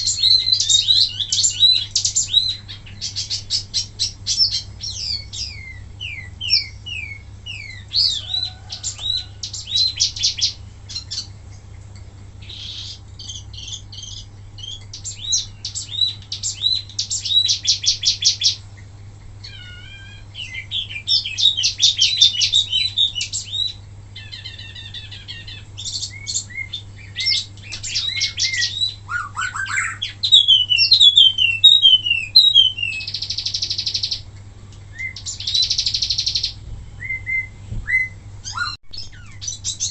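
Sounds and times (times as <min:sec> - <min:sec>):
songbird chirping and trilling: 0:00.0 - 0:39.9.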